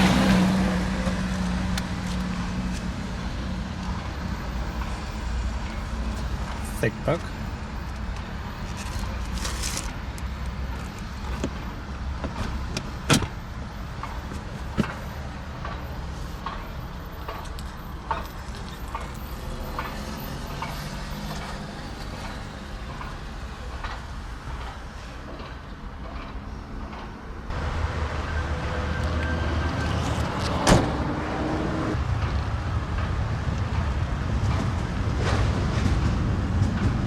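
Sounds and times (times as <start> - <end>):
clicks and knocks inside a car: 11.2 - 13.4, 14.0 - 16.6.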